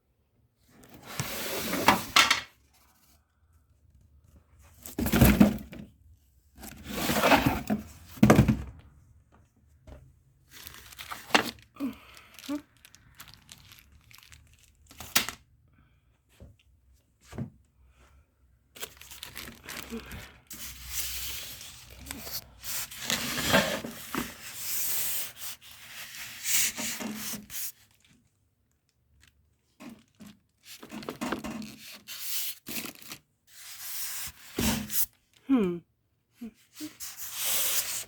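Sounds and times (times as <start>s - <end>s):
packaging tearing and crinkling: 10.5s - 15.4s, 18.8s - 24.2s.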